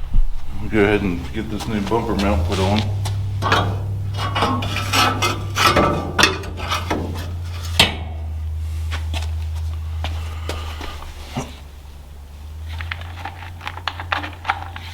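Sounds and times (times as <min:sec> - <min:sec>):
steady low hum: 0:00.0 - 0:14.9
metal parts clanking: 0:01.4 - 0:08.4
sharp metallic knocks: 0:01.6 - 0:08.5.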